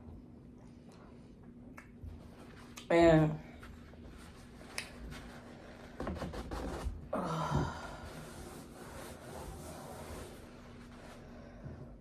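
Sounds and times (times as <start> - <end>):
soft rustling: 3.4 - 6.9, 8.1 - 11.3.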